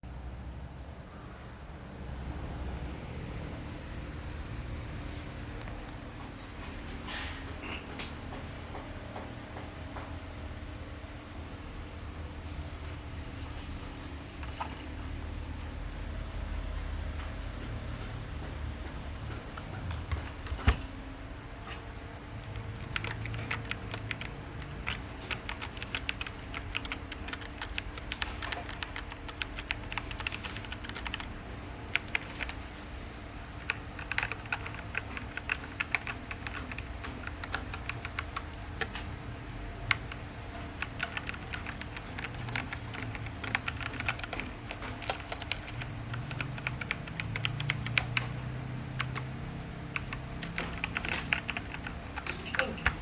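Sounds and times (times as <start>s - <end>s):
mechanical keyboard typing: 14.4s - 15.0s, 22.4s - 32.7s, 33.6s - 53.0s.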